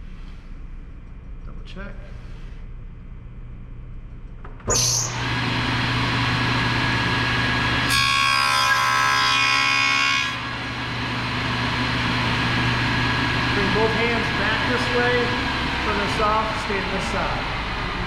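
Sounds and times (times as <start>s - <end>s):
table saw motor running: 4.8s - 18.0s
saw blade cutting wood: 7.8s - 10.4s.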